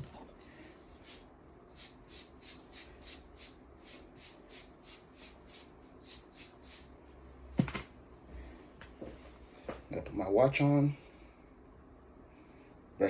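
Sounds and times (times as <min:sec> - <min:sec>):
quick rubbing strokes: 0:01.0 - 0:06.9.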